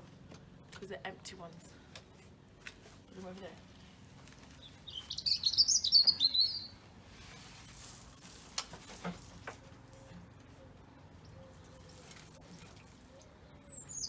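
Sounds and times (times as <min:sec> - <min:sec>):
songbird twittering: 0:04.6 - 0:06.8, 0:13.6 - 0:14.0.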